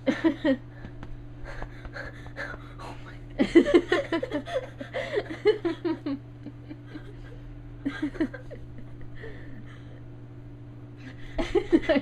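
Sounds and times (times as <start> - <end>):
person laughing: 3.4 - 10.0, 11.1 - 12.0.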